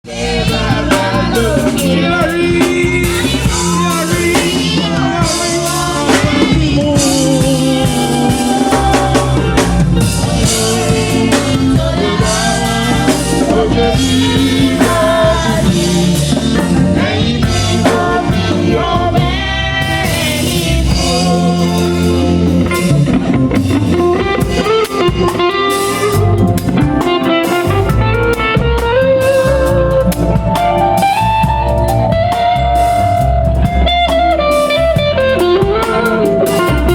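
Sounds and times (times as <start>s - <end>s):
gospel band music: 0.0s - 36.9s.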